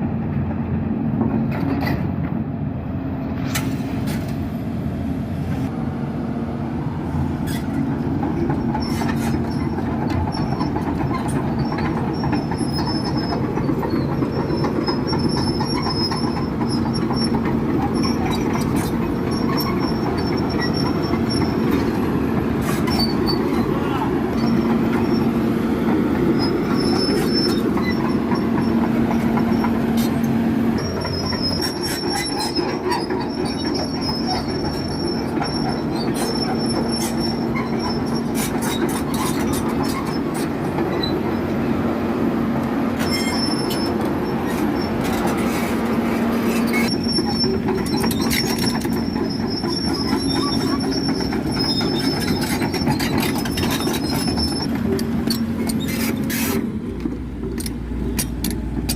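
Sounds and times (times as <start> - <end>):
pump truck mechanical drone: 0.0 - 58.9
high thin squeal: 43.0 - 54.7.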